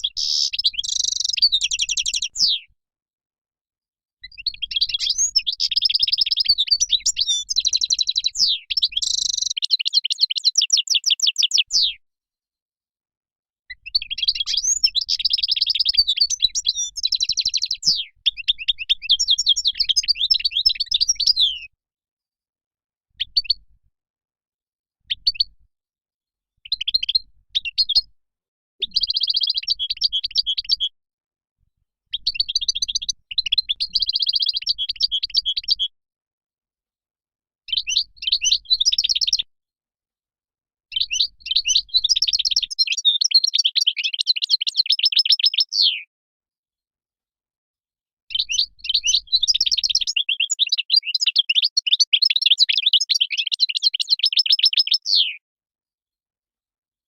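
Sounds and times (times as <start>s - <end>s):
goldfinch singing: 0.0s - 2.6s, 4.2s - 11.9s, 13.9s - 21.6s, 28.8s - 30.9s, 32.2s - 35.9s, 37.7s - 39.4s, 40.9s - 46.0s, 48.3s - 55.4s.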